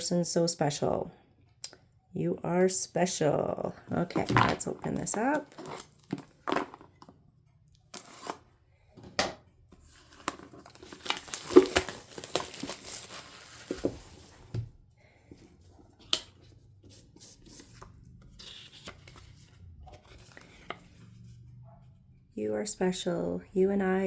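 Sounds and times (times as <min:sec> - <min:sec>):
packaging torn and crinkled: 0:10.0 - 0:14.4.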